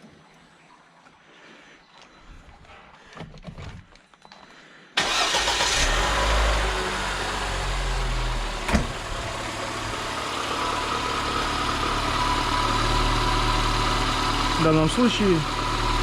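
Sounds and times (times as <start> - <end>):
car engine idling: 5.0 - 16.0.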